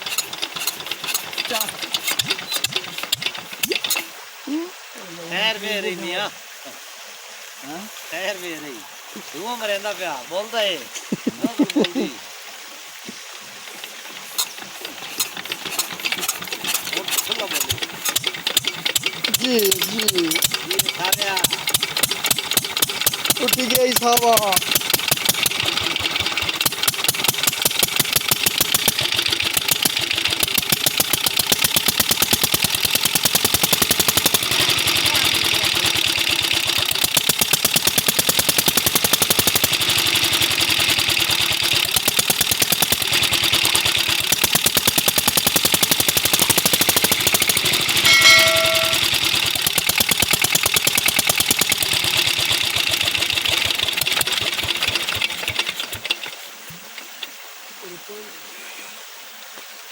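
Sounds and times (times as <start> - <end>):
diesel engine running: 0.0 - 4.2, 13.7 - 56.2
short high beep: 48.0 - 49.0.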